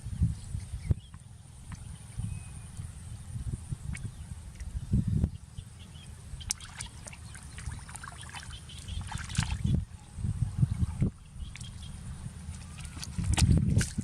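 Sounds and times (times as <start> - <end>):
water splashing and trickling: 6.4 - 9.8, 10.6 - 14.0.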